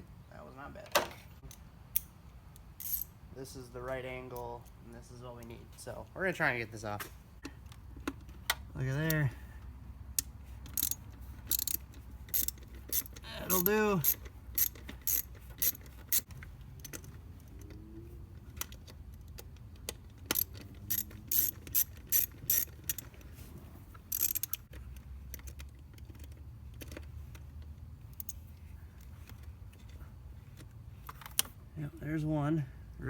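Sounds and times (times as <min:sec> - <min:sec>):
ratcheting driver clicking: 0:10.2 - 0:17.2, 0:18.6 - 0:23.2, 0:24.1 - 0:24.7.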